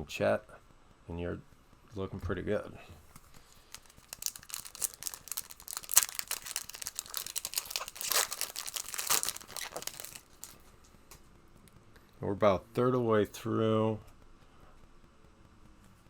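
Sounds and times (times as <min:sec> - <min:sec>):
foil wrapper crinkling and tearing: 0:03.4 - 0:10.6.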